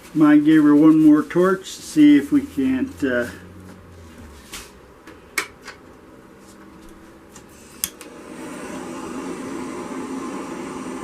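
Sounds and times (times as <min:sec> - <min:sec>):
torch hissing flame: 0:07.5 - 0:11.0.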